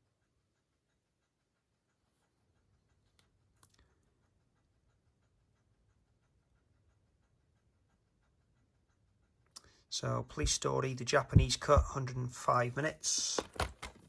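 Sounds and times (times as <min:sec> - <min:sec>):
plastic case clicks: 0:13.3 - 0:14.0.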